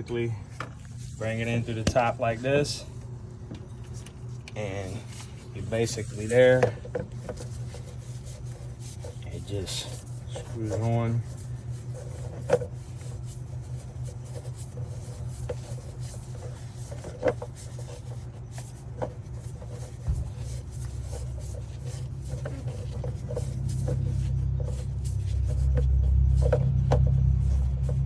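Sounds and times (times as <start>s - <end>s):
hands turning fuel filter: 0.0s - 28.0s
steady low rumble: 18.7s - 28.0s.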